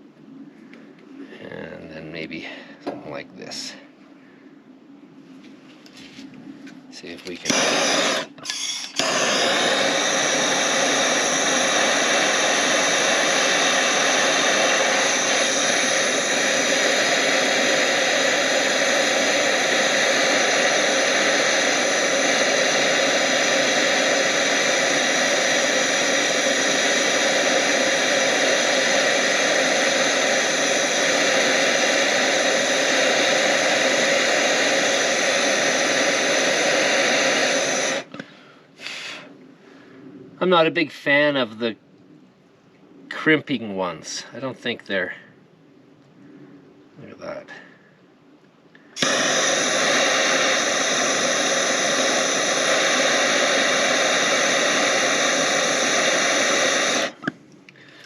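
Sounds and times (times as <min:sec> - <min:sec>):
gas torch hissing: 0:06.9 - 0:39.3, 0:48.9 - 0:58.0.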